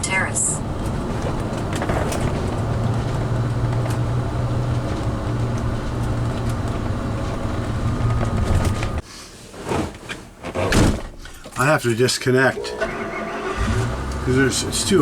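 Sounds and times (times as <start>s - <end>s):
engine drone: 0.0s - 9.0s, 12.5s - 15.0s
road noise: 0.0s - 9.0s, 11.6s - 15.0s.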